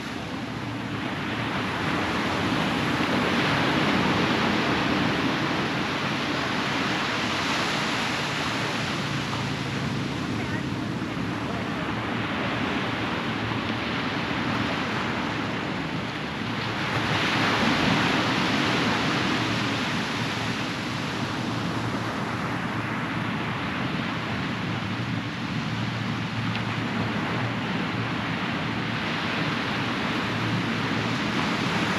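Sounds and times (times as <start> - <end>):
ocean waves washing onto beach: 0.0 - 31.9.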